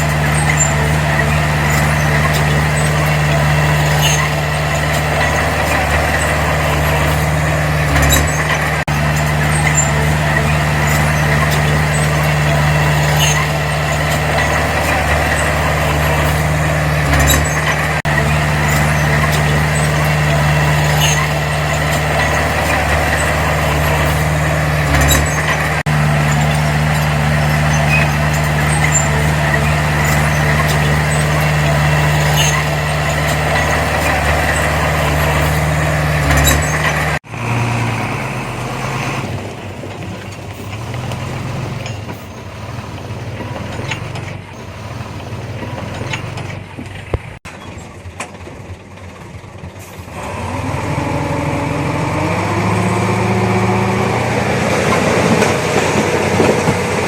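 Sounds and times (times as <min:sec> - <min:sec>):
quieter engine running: 0:00.0 - 0:47.4
heavy diesel engine running: 0:00.0 - 0:57.0.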